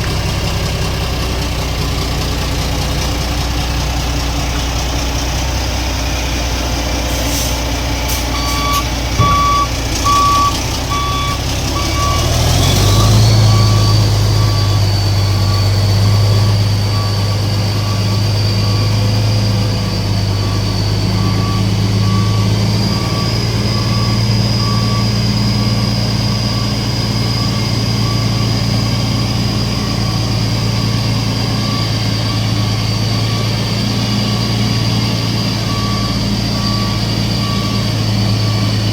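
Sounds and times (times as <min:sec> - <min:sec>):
diesel truck engine running: 0:00.0 - 0:38.9
short beeps: 0:08.3 - 0:28.6, 0:35.6 - 0:38.9.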